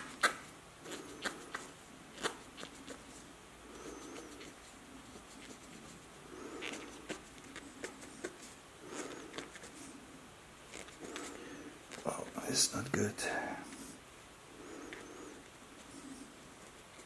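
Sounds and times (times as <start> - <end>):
dove cooing: 0.0 - 12.1.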